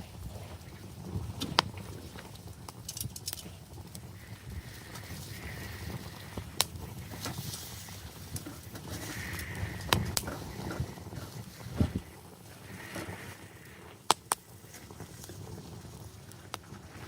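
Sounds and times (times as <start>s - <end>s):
campfire crackling and popping: 0.0s - 17.0s.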